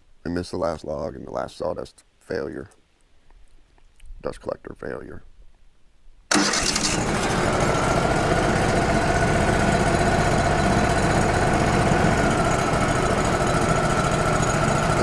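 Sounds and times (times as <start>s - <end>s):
machinery and blower noise: 6.3s - 15.0s
sawmill diesel engine running: 6.3s - 15.0s.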